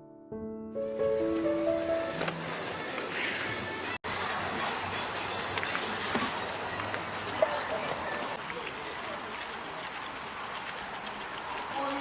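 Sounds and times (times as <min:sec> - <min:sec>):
crickets chirping: 0:00.8 - 0:12.0.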